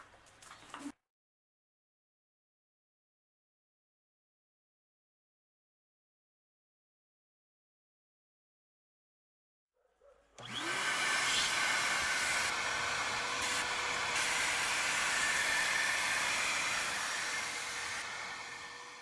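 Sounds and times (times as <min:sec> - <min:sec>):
shop vacuum motor running: 0:10.4 - 0:19.0.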